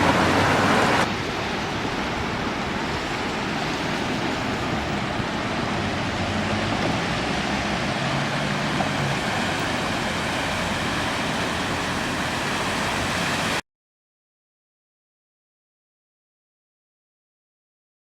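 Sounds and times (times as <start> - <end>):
flowing rainwater rushing: 0.0 - 13.6.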